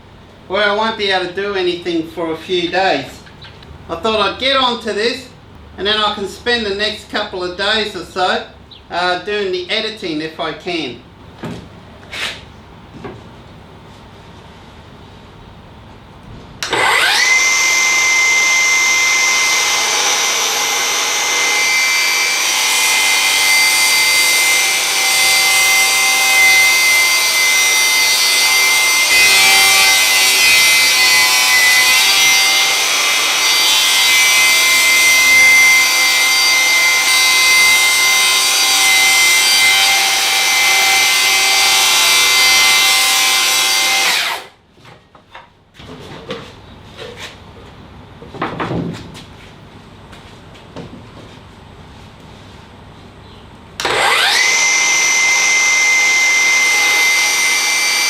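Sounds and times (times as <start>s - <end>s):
circular saw cutting wood: 16.6s - 44.5s, 53.8s - 58.0s
saw motor whine: 16.6s - 44.5s, 53.8s - 58.0s.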